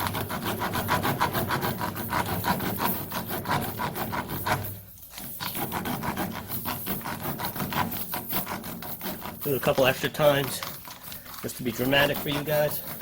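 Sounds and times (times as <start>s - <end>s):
rasp scraping tire rubber: 0.0s - 13.0s.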